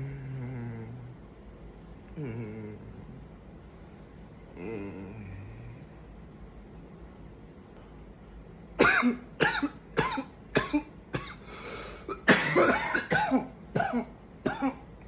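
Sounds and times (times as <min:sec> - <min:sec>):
man coughing: 0:08.8 - 0:14.9.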